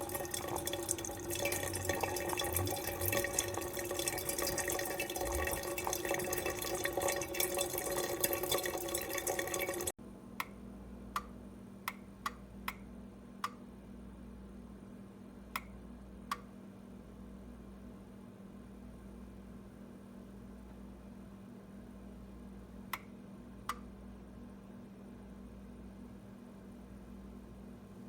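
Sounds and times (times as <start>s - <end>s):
water rushing through coffee maker: 0.0s - 9.9s
faint steady hum: 0.0s - 28.0s.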